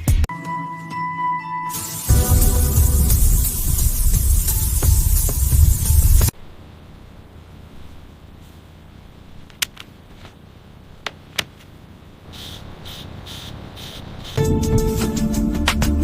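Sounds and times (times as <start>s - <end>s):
music: 0.0s - 6.3s, 14.4s - 16.0s
short hissy pulses: 1.7s - 6.3s, 12.2s - 14.5s
faint steady hum: 2.1s - 14.4s.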